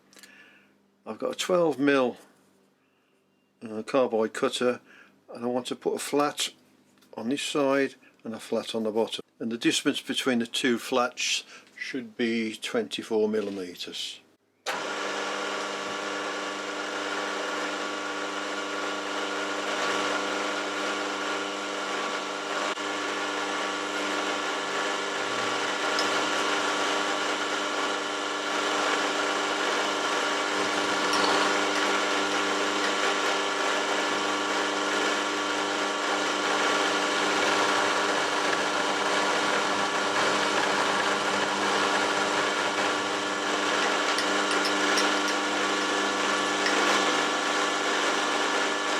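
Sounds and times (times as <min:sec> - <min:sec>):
milling machine hum: 0:14.7 - 0:48.9.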